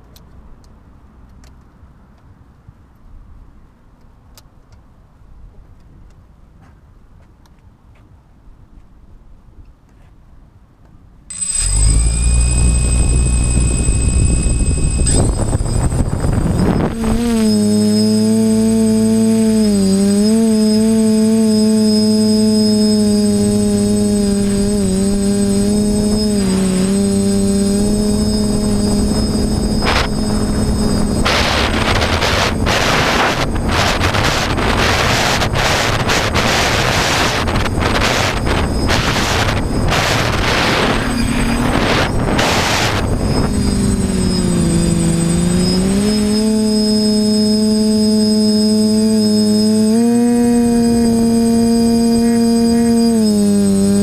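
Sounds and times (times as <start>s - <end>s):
quadcopter motors humming: 11.3s - 54.0s
wind noise on microphone: 11.3s - 54.0s.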